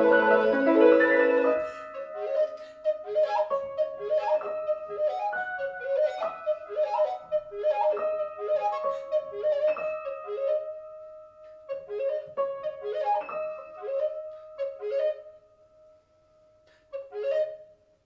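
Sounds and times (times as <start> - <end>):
brief cluster of notes: 0.0 - 2.7
long held note: 0.0 - 2.7.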